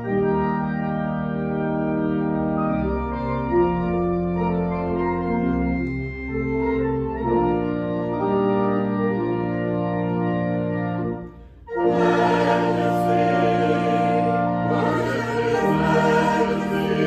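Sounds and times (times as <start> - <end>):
organ chords: 0.0 - 17.0
choir singing: 11.7 - 17.0.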